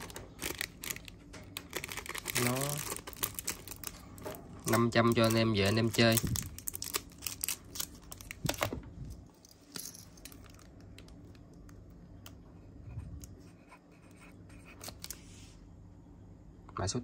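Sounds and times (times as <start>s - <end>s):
plastic crinkling: 0.0s - 12.4s
faint steady hum: 0.0s - 17.0s.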